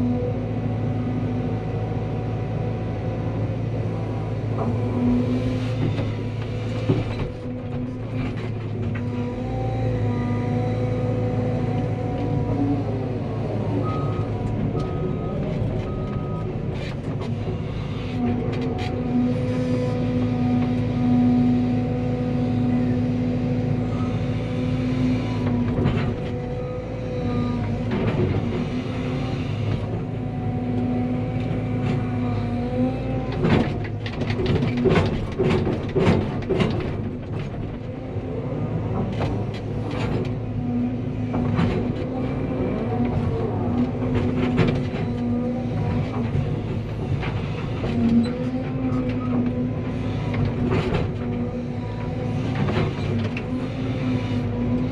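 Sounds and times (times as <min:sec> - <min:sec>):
excavator diesel engine running: 0:00.0 - 0:54.9
clanking and knocking: 0:33.4 - 0:37.9.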